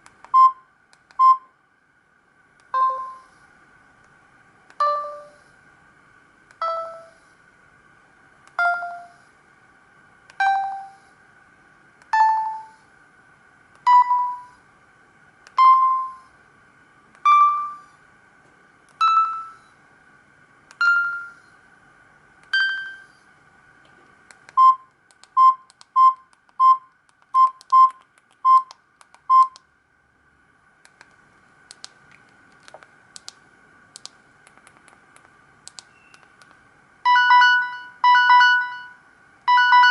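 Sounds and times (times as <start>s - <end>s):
phone ringtone beeps: 2.8s - 3.2s, 6.6s - 7.1s, 37.1s - 39.9s.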